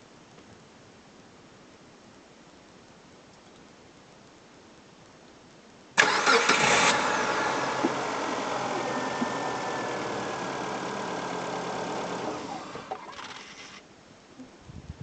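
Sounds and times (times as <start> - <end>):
car engine idling: 6.0 - 13.8
starter cranking: 6.0 - 13.8.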